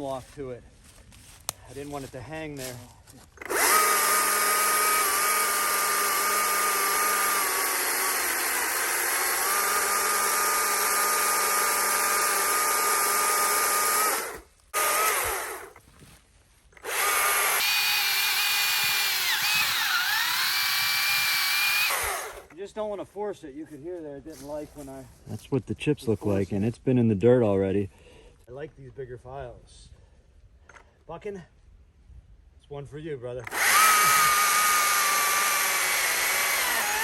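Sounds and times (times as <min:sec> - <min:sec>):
chainsaw cutting log: 0:03.2 - 0:15.8, 0:16.8 - 0:22.6, 0:33.4 - 0:37.0.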